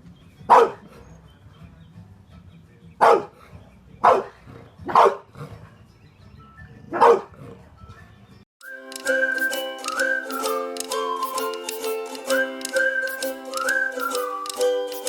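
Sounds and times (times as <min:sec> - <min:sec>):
dog barking: 0:00.5 - 0:00.8, 0:03.0 - 0:03.4, 0:04.0 - 0:05.4, 0:07.0 - 0:07.3
background music: 0:08.6 - 0:15.0.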